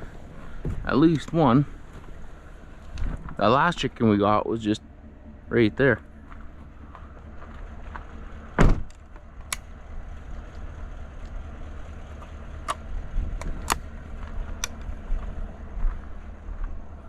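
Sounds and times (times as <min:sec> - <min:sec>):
vehicle idling rumble: 0:00.0 - 0:17.0
sharp clicks and knocks: 0:12.2 - 0:15.3.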